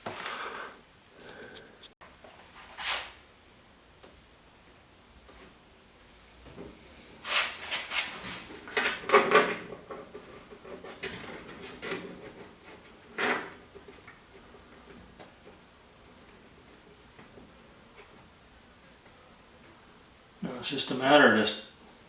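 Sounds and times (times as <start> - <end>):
scraping and rubbing: 7.2 - 8.6.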